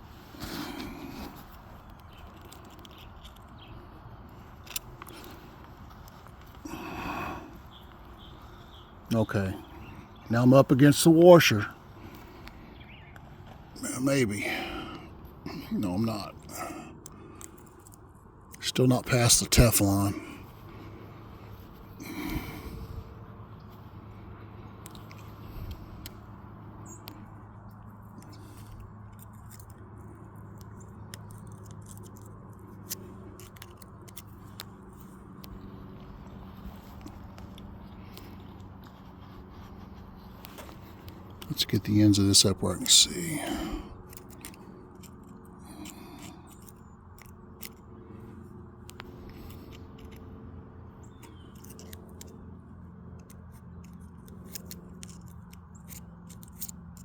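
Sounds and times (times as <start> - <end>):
steady low hum: 0.0 - 57.0
metal parts clicking and scraping: 1.2 - 3.8, 28.2 - 35.7, 40.4 - 50.3, 51.0 - 52.4, 53.1 - 57.0.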